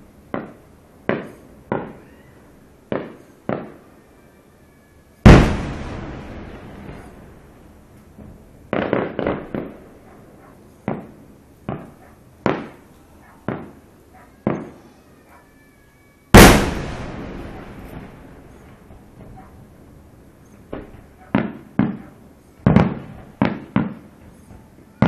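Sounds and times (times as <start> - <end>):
fireworks bursting: 0.0 - 4.0, 5.2 - 15.0, 16.3 - 25.0
loud fireworks boom: 5.2 - 10.0, 16.3 - 19.4.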